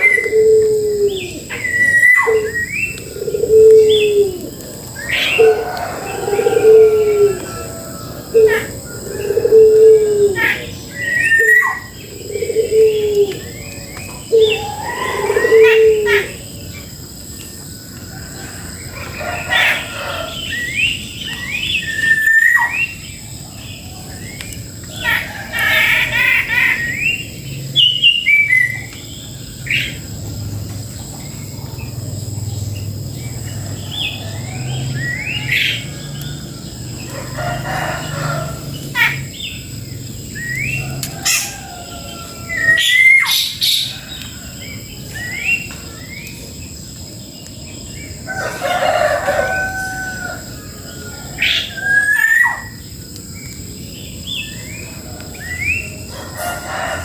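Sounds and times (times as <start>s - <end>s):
harsh fowl calls: 25.0s - 27.0s.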